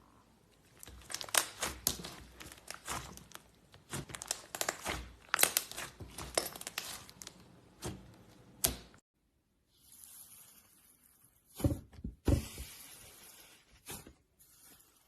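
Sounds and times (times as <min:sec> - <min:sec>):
slime crackling and popping: 0:00.7 - 0:07.9.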